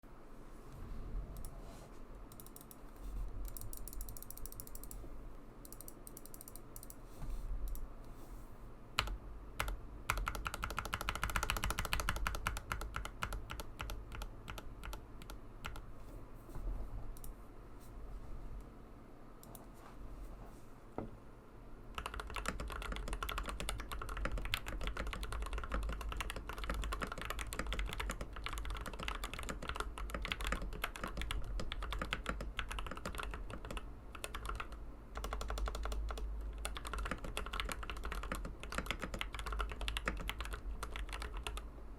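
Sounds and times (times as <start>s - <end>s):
mechanical keyboard typing: 3.5s - 5.0s, 9.0s - 15.9s, 21.9s - 41.7s.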